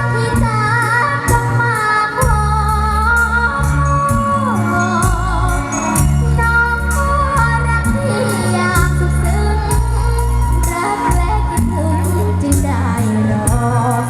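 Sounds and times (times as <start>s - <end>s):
song with heavy bass and drums: 0.0s - 14.0s
woman singing: 0.0s - 14.0s.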